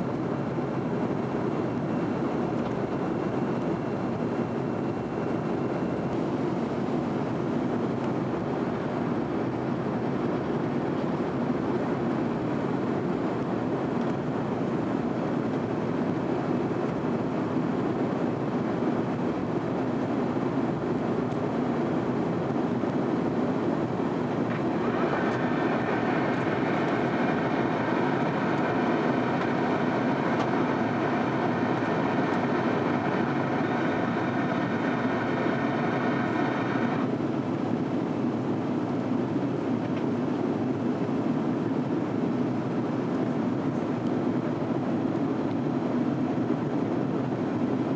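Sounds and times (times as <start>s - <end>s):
aircraft cabin engine roar: 0.0s - 47.9s
steady whining tones: 24.5s - 37.1s.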